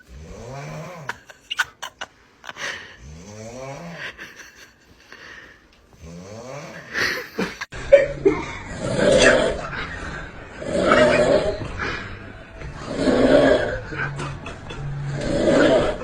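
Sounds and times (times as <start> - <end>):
loud snoring: 0.0 - 1.2, 2.9 - 4.2, 6.0 - 7.3, 8.3 - 16.0.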